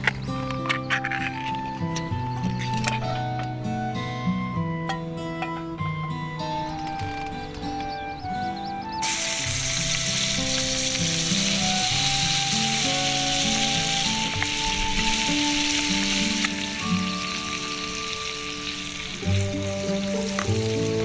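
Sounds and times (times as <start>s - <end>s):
food sizzling in a pan: 9.0s - 21.0s.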